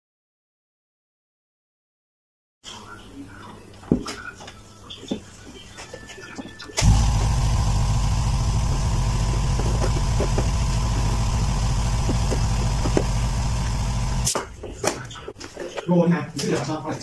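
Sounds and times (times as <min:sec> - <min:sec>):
steady motor noise: 0:06.8 - 0:14.5.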